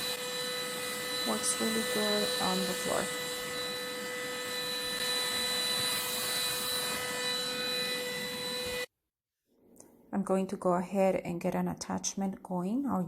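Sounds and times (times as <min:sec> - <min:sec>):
vacuum cleaner on hard floor: 0:00.0 - 0:08.9.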